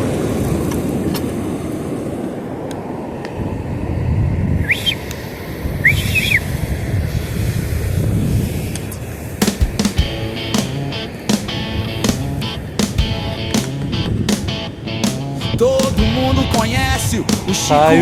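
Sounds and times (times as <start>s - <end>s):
wind buffeting microphone: 0.0s - 18.0s
high arching calls: 5.8s - 6.5s.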